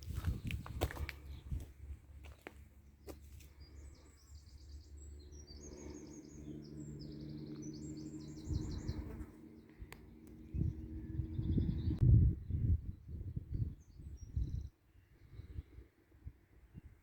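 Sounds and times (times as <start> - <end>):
low background rumble: 0.2 - 14.6
songbird trilling: 3.6 - 12.0.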